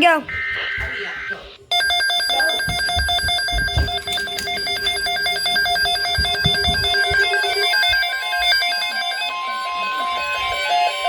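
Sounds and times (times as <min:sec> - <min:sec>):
electronic alert tone warbling: 0:02.3 - 0:11.0
soft low thumps: 0:02.6 - 0:08.0.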